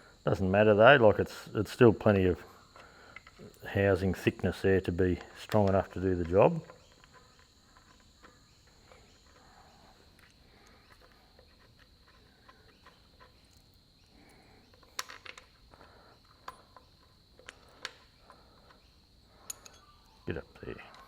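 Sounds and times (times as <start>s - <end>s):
bolts and washers handled: 5.0s - 9.4s, 14.7s - 18.8s, 19.4s - 21.0s.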